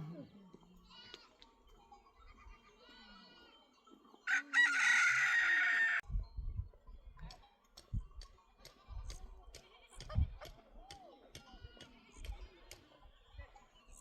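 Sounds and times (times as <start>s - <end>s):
rooster crowing: 4.3s - 6.0s.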